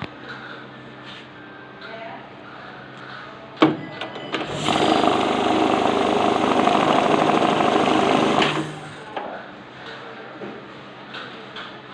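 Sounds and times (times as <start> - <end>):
banknote counter whirring: 4.3 - 9.1.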